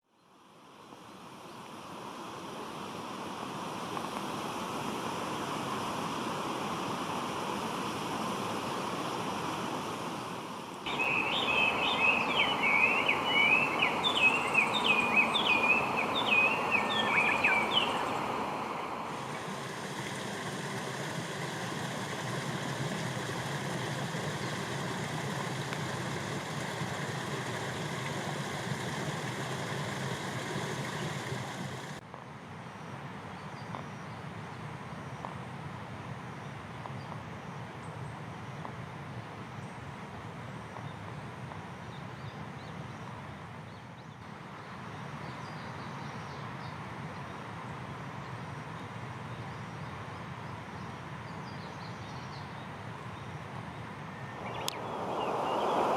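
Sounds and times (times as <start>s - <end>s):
outdoor background noise: 0.0s - 55.9s
small bird chirping: 10.9s - 18.4s.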